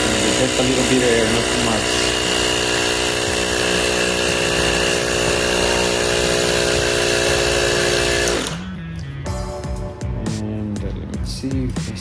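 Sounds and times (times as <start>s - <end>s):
electric hand pump running: 0.0s - 8.7s.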